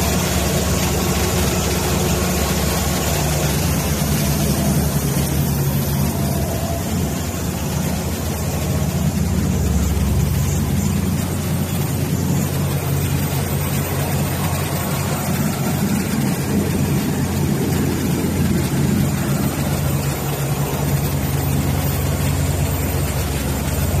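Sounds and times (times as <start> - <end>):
diesel engine running steadily: 0.0 - 24.0.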